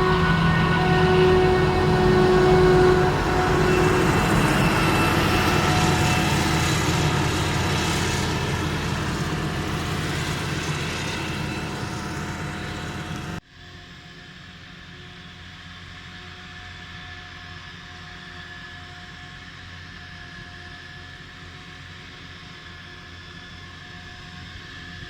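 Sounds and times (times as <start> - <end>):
distant engine: 0.0 - 13.4
heavy farm machinery engines: 0.0 - 13.4.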